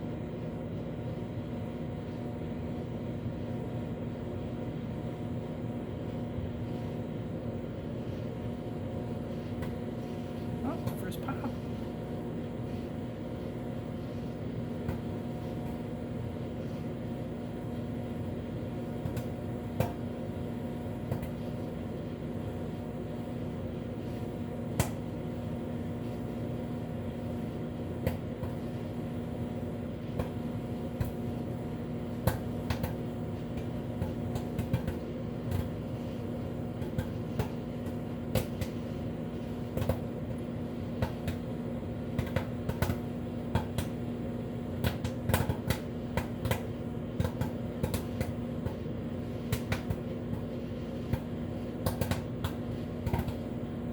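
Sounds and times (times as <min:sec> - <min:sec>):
microwave oven humming: 0:00.0 - 0:53.9
popcorn popping: 0:13.1 - 0:23.6, 0:24.3 - 0:53.9.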